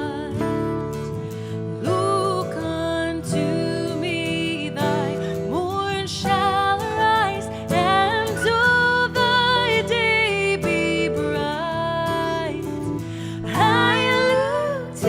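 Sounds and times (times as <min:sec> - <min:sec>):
person singing a hymn: 0:13.4 - 0:15.0.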